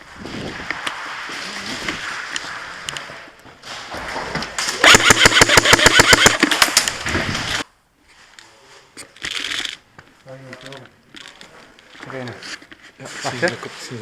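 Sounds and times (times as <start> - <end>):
airsoft gun rapid firing: 4.7 - 7.6.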